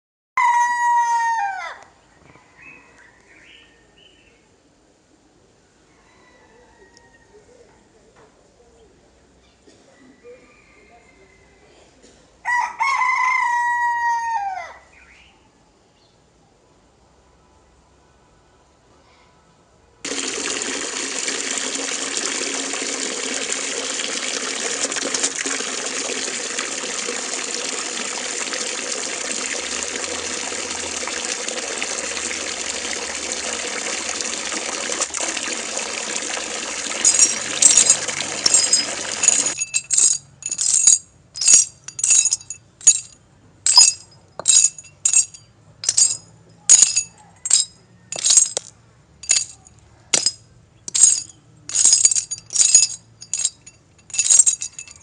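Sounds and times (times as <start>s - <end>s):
sharp clinks: 37.0s - 55.0s.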